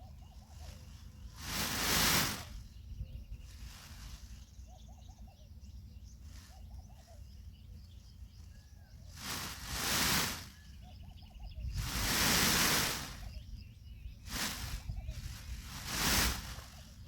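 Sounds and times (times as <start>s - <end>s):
birds chirping: 0.0s - 17.0s
loud rushing noise: 1.4s - 2.5s, 11.8s - 13.3s, 15.7s - 16.7s.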